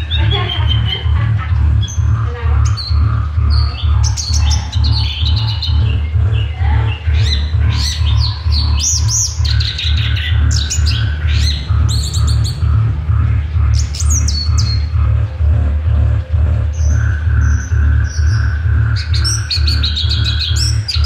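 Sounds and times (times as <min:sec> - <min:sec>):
loud low rumble: 0:00.0 - 0:21.0
thrush singing whistled phrases: 0:00.0 - 0:21.0.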